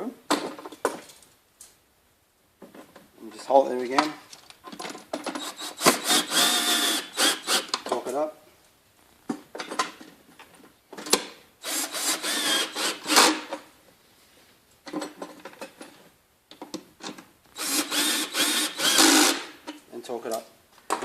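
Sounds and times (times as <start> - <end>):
power drill driving nuts: 5.3 - 7.8, 11.6 - 13.5, 17.6 - 19.6.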